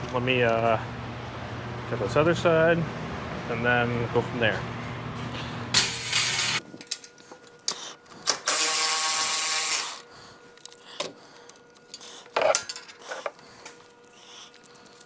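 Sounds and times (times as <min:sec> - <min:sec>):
power tool running: 0:05.7 - 0:06.6, 0:08.3 - 0:10.1
clicks and clanks of tools: 0:05.8 - 0:08.8, 0:10.6 - 0:13.8.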